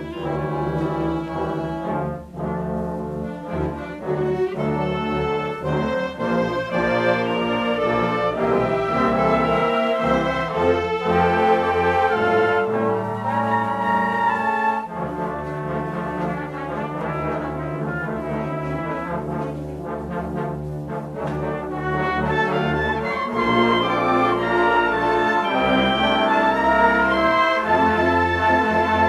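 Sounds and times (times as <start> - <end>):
brass music sustained chords: 0.0 - 29.0.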